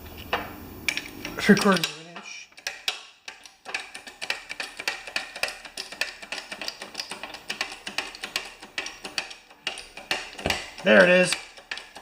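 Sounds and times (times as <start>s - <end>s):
jack press metallic clicks: 0.9s - 12.0s.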